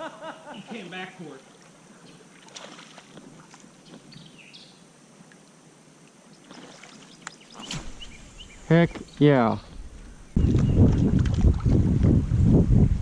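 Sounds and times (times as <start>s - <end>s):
water against kayak hull: 1.4s - 4.2s, 9.7s - 12.4s.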